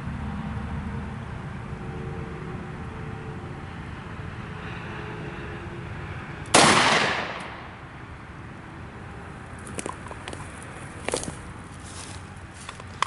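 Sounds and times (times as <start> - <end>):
pistol shot echoing: 6.5 - 7.7.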